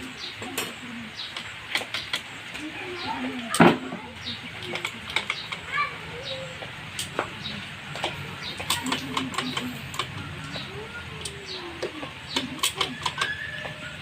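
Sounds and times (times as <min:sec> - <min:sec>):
metal tools clicking: 0:04.6 - 0:05.7, 0:07.9 - 0:10.2, 0:11.2 - 0:13.8.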